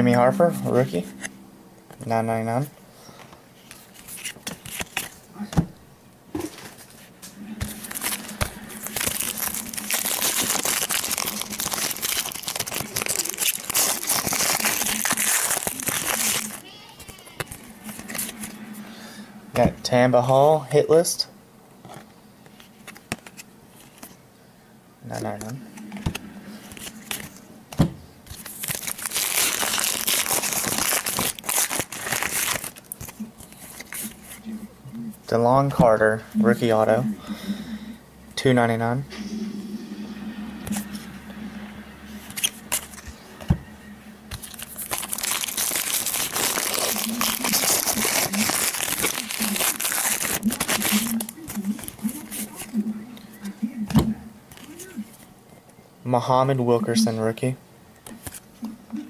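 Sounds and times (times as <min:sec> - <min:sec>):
wrapper crinkling and tearing: 0:03.7 - 0:05.2, 0:07.6 - 0:18.5, 0:28.3 - 0:34.4, 0:44.3 - 0:52.7.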